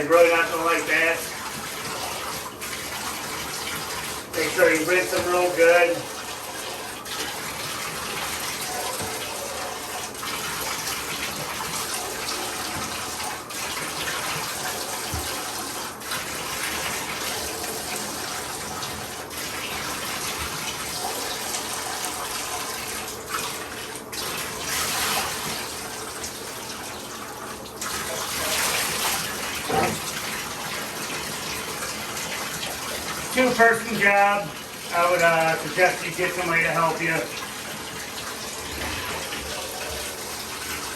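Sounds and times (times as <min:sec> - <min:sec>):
water running into bathtub: 0:00.0 - 0:40.9.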